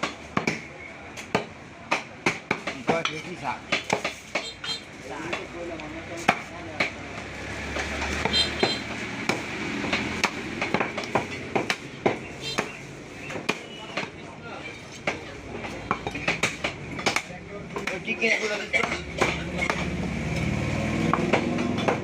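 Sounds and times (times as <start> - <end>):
knife chopping meat: 8.1 - 14.1.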